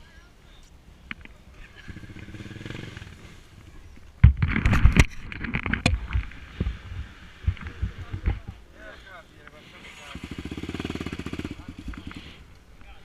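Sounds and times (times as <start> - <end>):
motorcycle engine at low revs: 1.8 - 3.8, 10.0 - 12.4
sharp knocks and clattering: 4.2 - 6.8.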